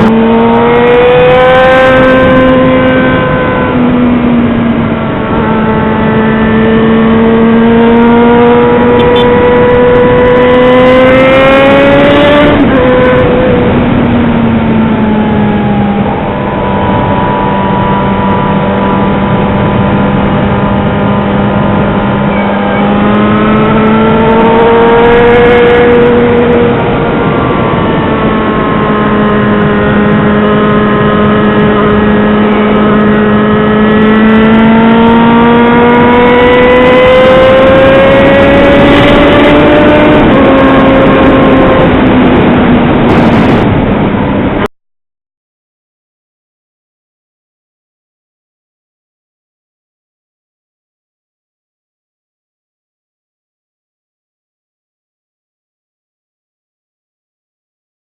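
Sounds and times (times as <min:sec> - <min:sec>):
motorcycle engine accelerating: 0:00.0 - 0:44.7.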